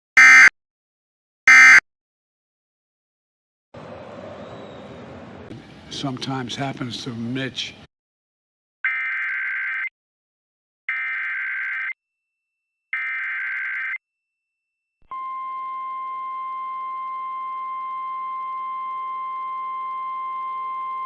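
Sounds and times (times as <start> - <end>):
steady warning alarm tone: 1.5 - 1.8, 15.1 - 21.0.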